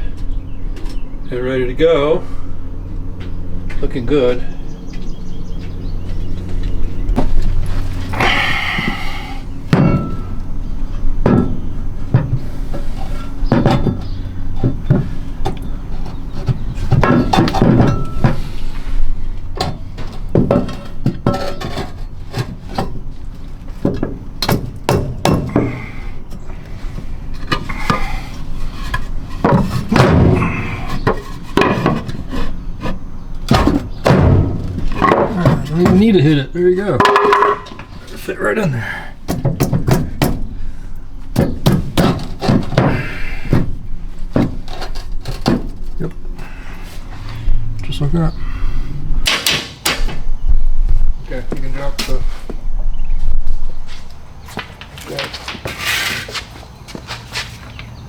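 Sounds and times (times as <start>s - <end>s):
low steady hum: 0.0s - 54.4s
metal frame knocking and scraping: 6.1s - 50.4s.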